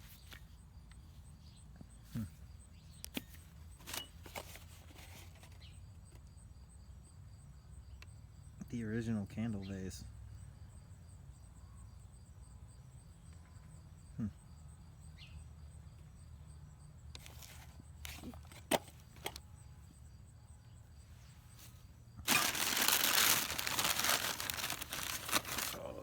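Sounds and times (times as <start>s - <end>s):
wrapping crinkling and rustling: 17.2s - 18.6s, 22.3s - 26.0s.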